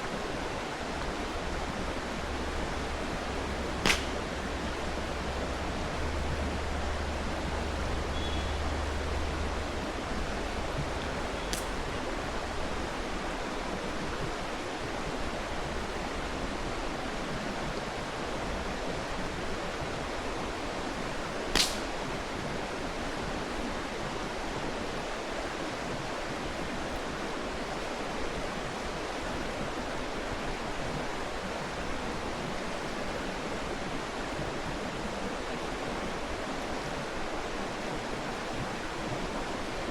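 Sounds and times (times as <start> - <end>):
campfire pops: 3.6 - 4.6, 10.8 - 12.2, 21.5 - 22.2.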